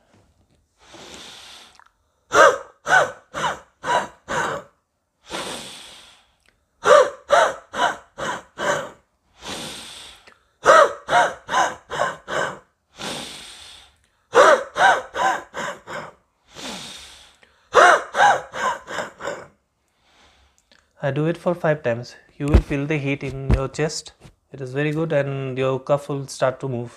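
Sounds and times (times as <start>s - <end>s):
man breathing in: 0.8s - 2.3s, 5.2s - 6.4s, 7.8s - 14.3s, 15.0s - 20.8s
sharp breath huffs: 0.8s - 20.6s.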